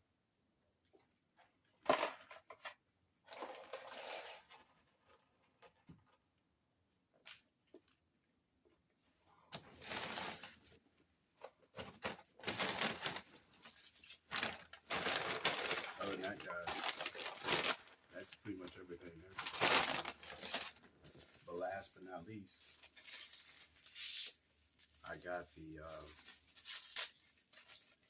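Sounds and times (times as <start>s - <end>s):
paper wrappers rustling: 11.7s - 28.0s.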